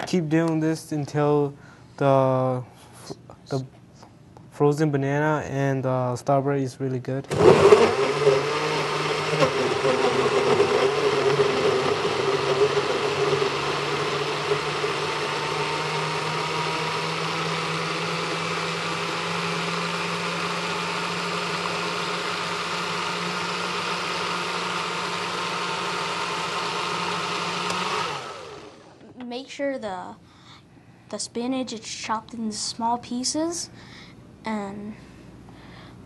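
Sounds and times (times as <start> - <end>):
blender motor running: 7.3 - 29.0.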